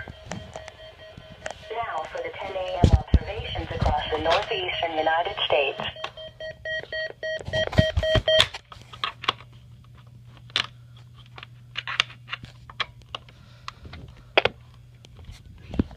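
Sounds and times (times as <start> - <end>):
rapidly pulsing electronic beep: 0.0 - 1.9
low steady hum: 0.0 - 15.9.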